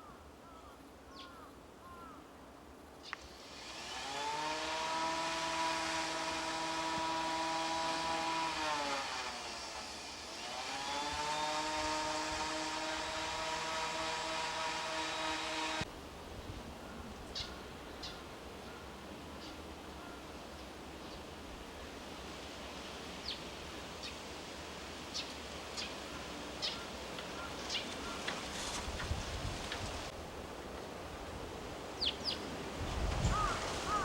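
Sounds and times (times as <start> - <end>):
small engine revving: 3.2 - 15.9.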